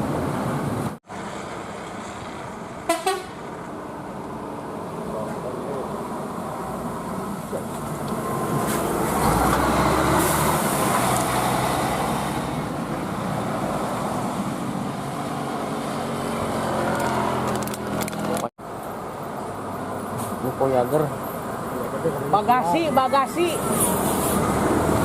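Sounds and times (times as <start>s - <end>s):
heavy vehicle engine and tyres: 0.0s - 25.0s.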